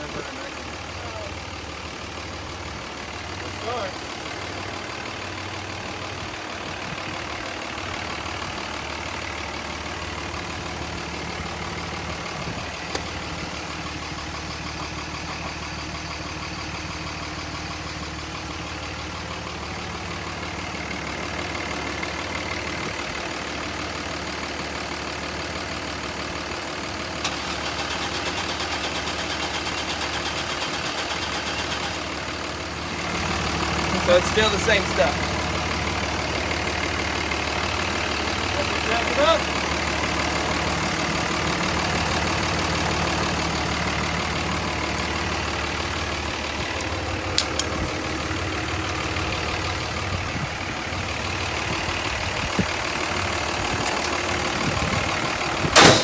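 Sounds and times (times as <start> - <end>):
truck engine idling: 0.0 - 56.0.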